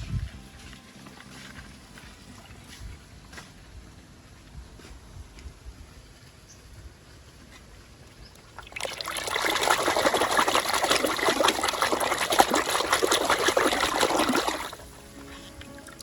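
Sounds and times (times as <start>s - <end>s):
water splashing on toys: 8.5s - 14.8s.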